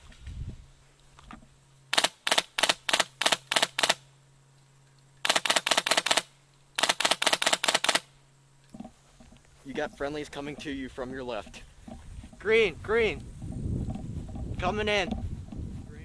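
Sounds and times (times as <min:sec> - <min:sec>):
airsoft rifle shots: 0:01.9 - 0:04.1, 0:05.2 - 0:08.1.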